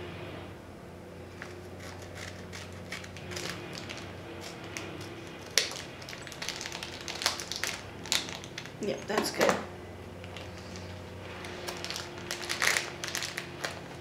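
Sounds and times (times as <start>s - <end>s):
plastic bag crinkling: 1.3s - 9.4s, 10.2s - 14.0s.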